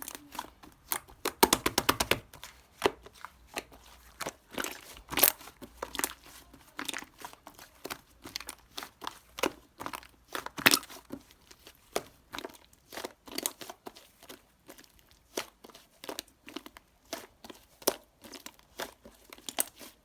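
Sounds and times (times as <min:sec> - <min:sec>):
crinkling and crunching: 0:00.0 - 0:20.0
tapping: 0:01.4 - 0:02.2.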